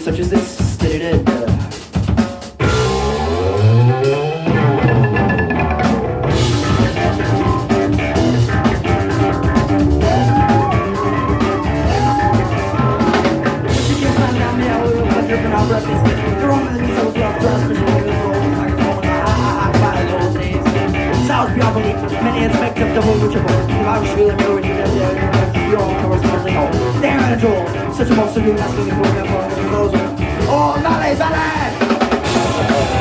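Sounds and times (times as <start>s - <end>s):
live rock band playing: 0.0s - 33.0s
sliding high guitar notes: 2.6s - 23.8s, 32.2s - 33.0s.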